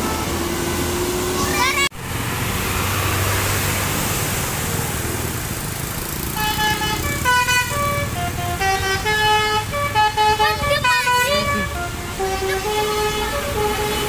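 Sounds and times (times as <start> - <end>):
musical bus horn tune: 0.0 - 1.4, 6.3 - 14.0
engine and traffic rumble: 0.0 - 14.0.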